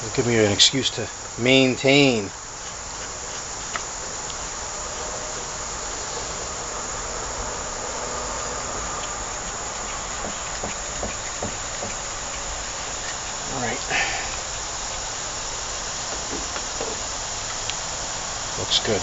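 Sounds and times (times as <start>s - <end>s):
steady background hiss: 0.0s - 19.0s.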